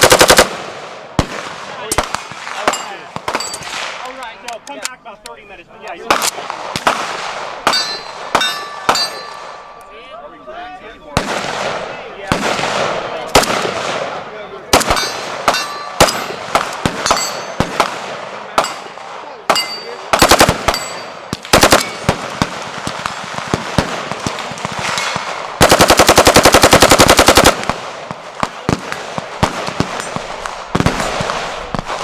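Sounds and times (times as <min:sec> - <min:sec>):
automatic gunfire bursts: 0:00.0 - 0:00.6, 0:20.1 - 0:27.8
fast machine-gun burst: 0:00.0 - 0:00.6, 0:20.2 - 0:20.8, 0:21.5 - 0:22.5, 0:25.6 - 0:27.7
single gunshots: 0:11.2 - 0:18.9.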